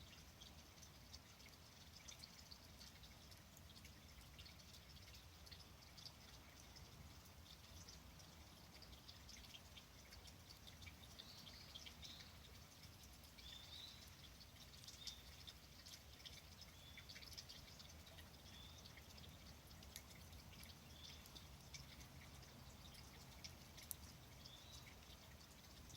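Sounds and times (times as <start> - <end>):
soft pops and ticks: 19.0 - 25.2.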